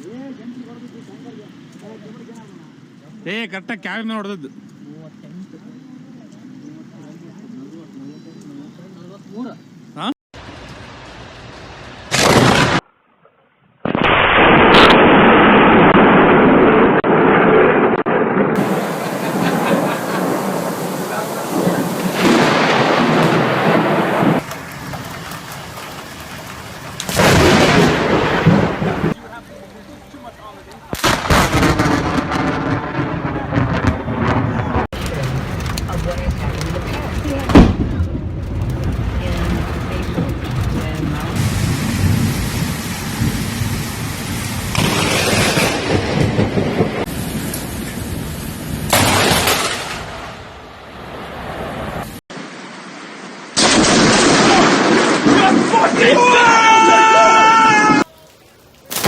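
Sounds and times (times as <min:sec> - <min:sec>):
steady rain hiss: 0:00.0 - 0:08.0, 0:08.8 - 0:12.8, 0:18.6 - 0:33.8, 0:34.9 - 0:59.0
loud thunder crash: 0:12.1 - 0:12.8, 0:13.8 - 0:29.2, 0:31.0 - 0:50.6, 0:53.6 - 0:56.4.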